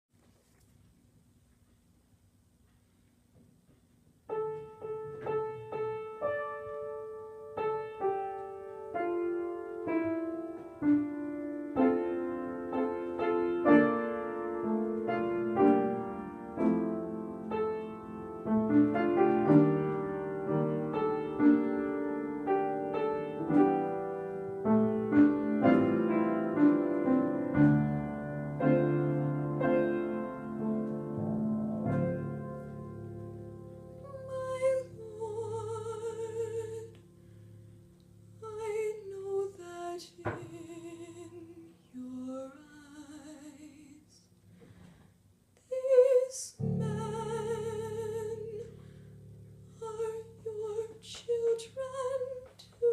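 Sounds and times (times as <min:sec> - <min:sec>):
solo piano playing: 0:04.3 - 0:38.4, 0:46.6 - 0:50.9.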